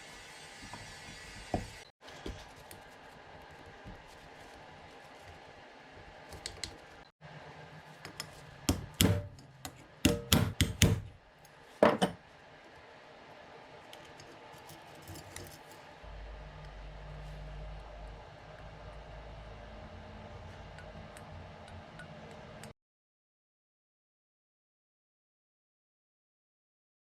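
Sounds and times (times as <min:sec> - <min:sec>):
low hum: 0:16.0 - 0:22.7.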